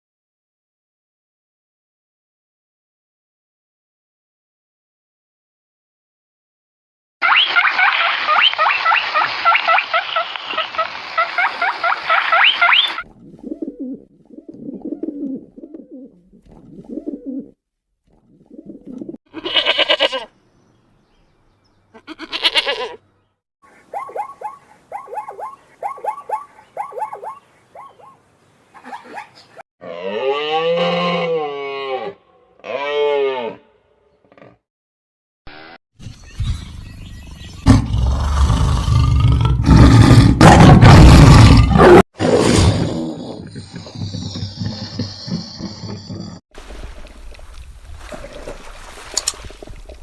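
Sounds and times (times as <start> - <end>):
birds chirping: 20.3 - 22.1, 23.0 - 29.6, 36.0 - 39.1.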